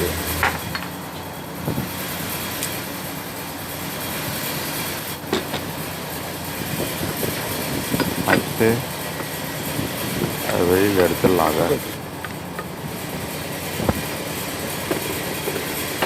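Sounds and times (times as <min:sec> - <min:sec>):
machinery rumble and hiss: 0:00.0 - 0:16.0.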